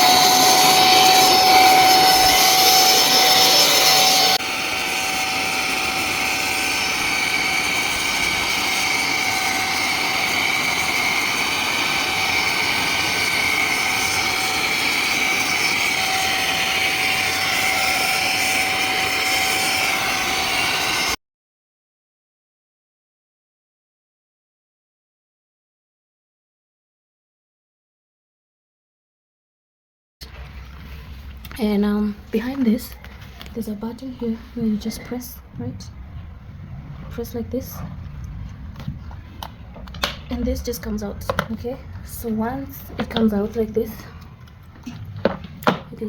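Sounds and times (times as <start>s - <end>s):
vacuum cleaner motor whooshing: 0.0s - 21.2s, 30.2s - 46.0s.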